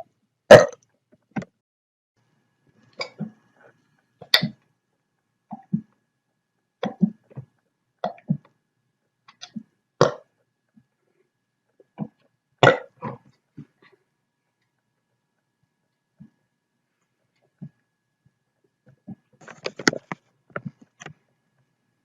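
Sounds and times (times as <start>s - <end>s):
person hiccuping: 0.5s - 0.8s, 12.6s - 13.2s
short burps: 0.5s - 0.8s, 12.6s - 13.2s.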